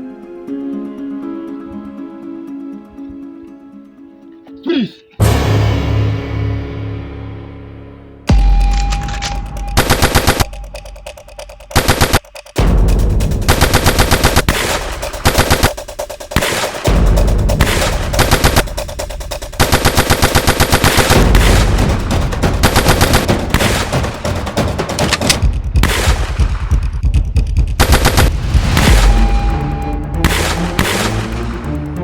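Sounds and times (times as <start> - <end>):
automatic gunfire bursts: 9.8 - 10.5, 11.8 - 12.2, 13.5 - 15.8, 17.6 - 18.7, 19.6 - 21.9, 22.5 - 26.4, 27.8 - 28.3.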